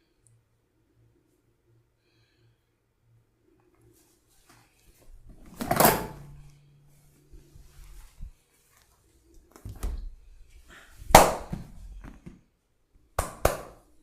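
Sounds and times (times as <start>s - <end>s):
hands slapping body: 11.1s - 12.4s, 13.2s - 13.9s.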